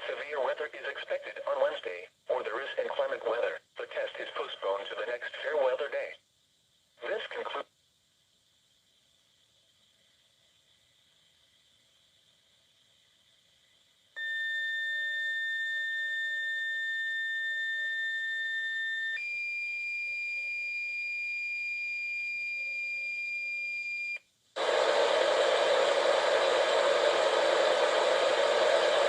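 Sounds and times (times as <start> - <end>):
radio static hiss: 0.0 - 6.3, 6.9 - 7.8, 24.6 - 29.0.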